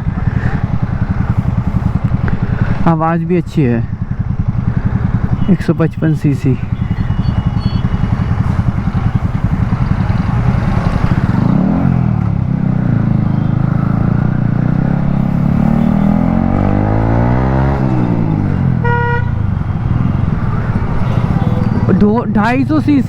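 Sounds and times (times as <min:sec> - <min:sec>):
motorcycle engine accelerating: 0:00.0 - 0:23.0
vehicle horn beep: 0:05.3 - 0:09.2, 0:13.2 - 0:13.6, 0:15.6 - 0:16.4, 0:18.8 - 0:22.0.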